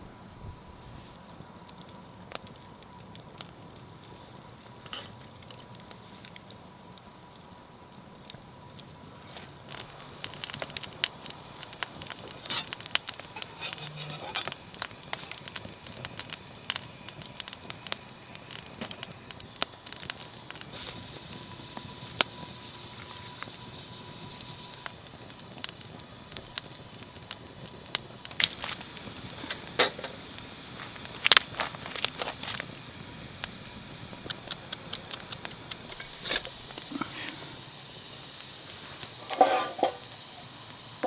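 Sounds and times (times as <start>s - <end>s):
low hiss: 0.0s - 41.0s
wood fire crackling: 0.0s - 41.0s
sharp pops: 24.7s - 40.2s.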